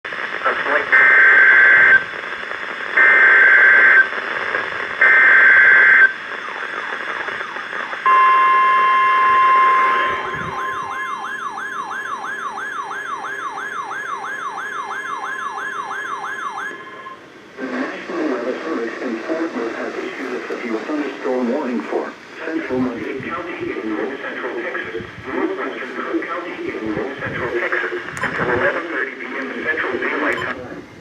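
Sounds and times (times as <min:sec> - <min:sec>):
radio hiss: 0:00.1 - 0:11.7, 0:16.9 - 0:31.0
steady warning tone: 0:05.0 - 0:17.5
siren-like warble: 0:08.1 - 0:17.3.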